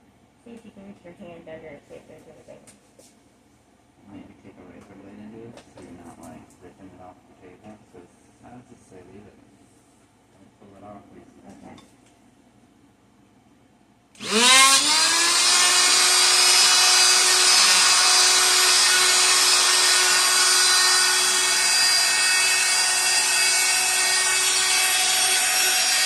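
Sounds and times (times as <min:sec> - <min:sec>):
electric sander motor whining: 0:14.2 - 0:26.0.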